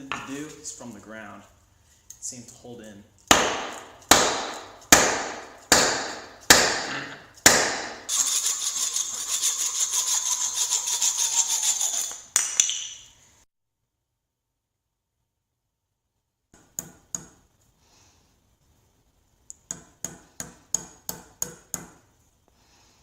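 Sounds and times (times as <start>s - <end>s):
sharp ringing blows on axe: 3.3s - 8.0s
fast metallic scraping: 8.1s - 12.3s.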